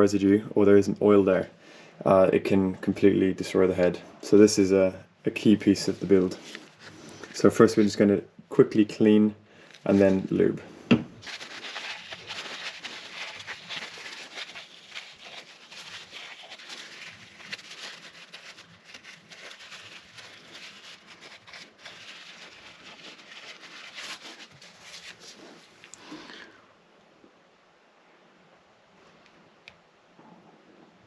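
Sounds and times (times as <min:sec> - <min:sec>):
cloth rubbing on metal: 0:09.7 - 0:10.6, 0:11.2 - 0:25.9.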